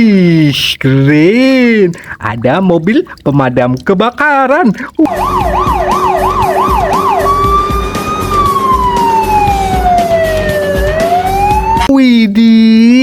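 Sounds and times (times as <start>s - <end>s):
fire engine siren: 5.1s - 11.9s.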